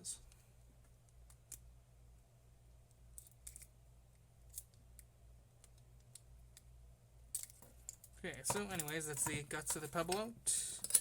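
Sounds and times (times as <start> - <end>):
steady low hum: 0.0 - 11.0
small parts clicking: 3.1 - 6.7, 7.3 - 10.2, 10.8 - 11.0.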